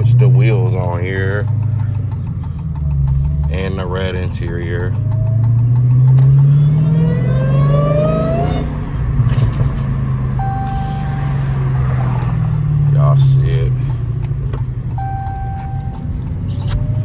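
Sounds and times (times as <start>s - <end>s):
car engine accelerating with whine: 0.0s - 17.0s.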